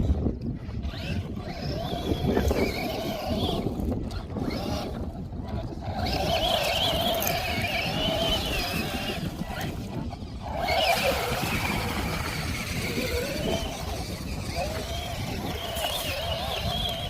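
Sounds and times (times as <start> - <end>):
wind rumbling on microphone: 0.0 - 17.0
toy truck electric motor whining: 0.7 - 17.0.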